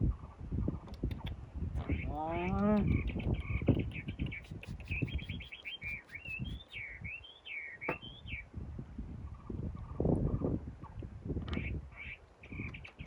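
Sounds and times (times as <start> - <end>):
small bird singing: 0.1 - 8.5, 11.6 - 13.0.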